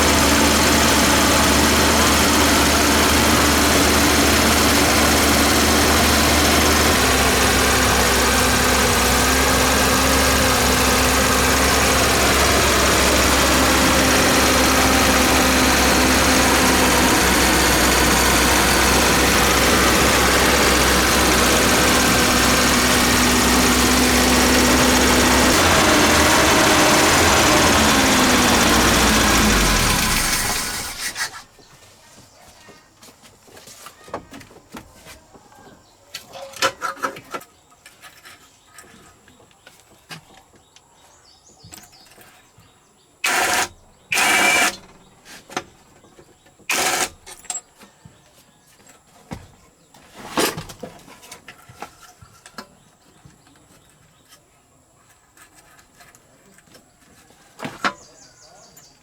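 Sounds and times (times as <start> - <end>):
road roller engine running: 0.0 - 31.4.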